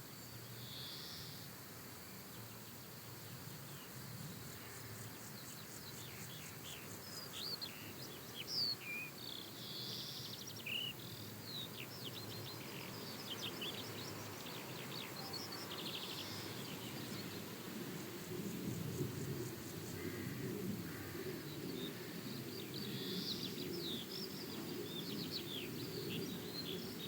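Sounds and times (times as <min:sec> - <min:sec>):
steady low background noise: 0:00.0 - 0:27.0
songbirds chirping: 0:02.1 - 0:18.0, 0:21.3 - 0:27.0.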